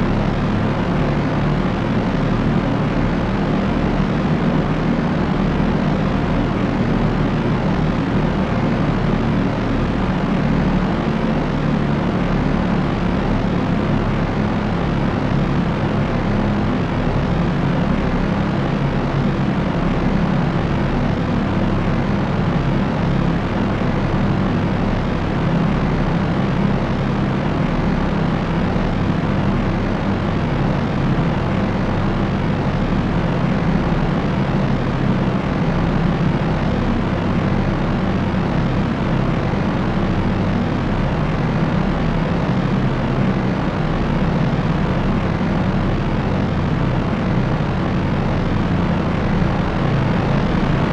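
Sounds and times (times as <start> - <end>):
airplane propellers droning: 0.0 - 50.9.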